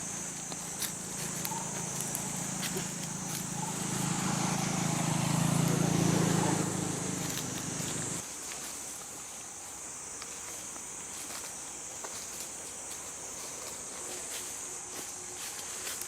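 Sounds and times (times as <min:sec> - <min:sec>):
high-pitched insect drone: 0:00.0 - 0:08.2
vehicle engine humming: 0:00.0 - 0:08.2.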